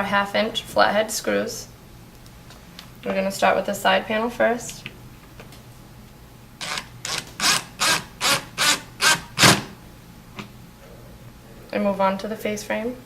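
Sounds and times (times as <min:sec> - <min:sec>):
power drill driving screw: 0:06.6 - 0:09.7.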